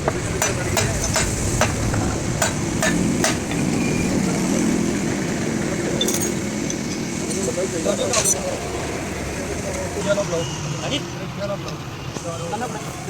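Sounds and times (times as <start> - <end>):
hammer striking metal: 0.0 - 3.7.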